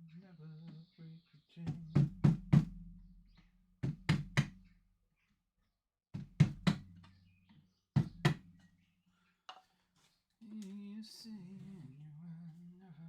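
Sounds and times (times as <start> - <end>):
knocks on a hollow object: 1.7 - 4.7, 6.2 - 7.2, 8.0 - 8.6.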